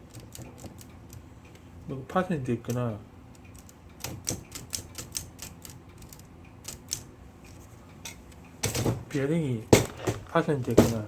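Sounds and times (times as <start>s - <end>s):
manual typewriter clicking: 0.0s - 1.3s, 2.6s - 7.1s.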